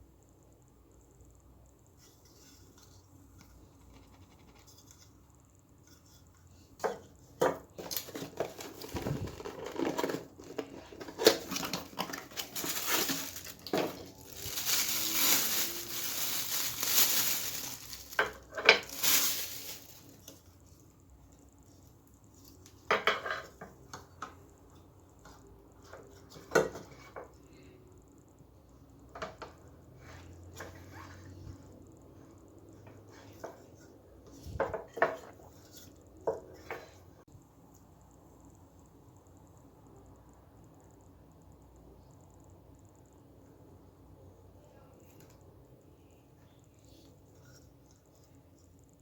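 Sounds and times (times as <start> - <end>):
wrapping rustling and tearing: 7.8 - 20.4.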